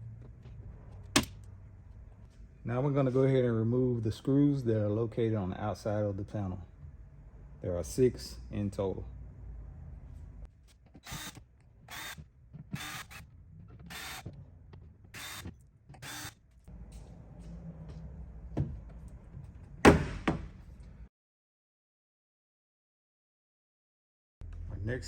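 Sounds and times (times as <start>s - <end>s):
power screwdriver whirring: 11.0s - 13.2s, 13.9s - 14.3s, 15.1s - 16.4s.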